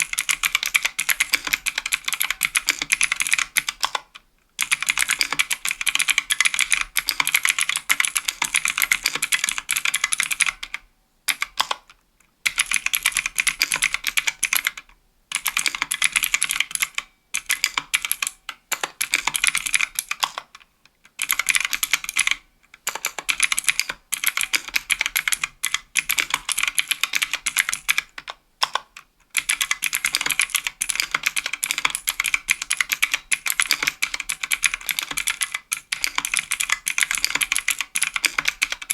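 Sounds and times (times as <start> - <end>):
fast typing on clicky keyboard: 0.0 - 38.9.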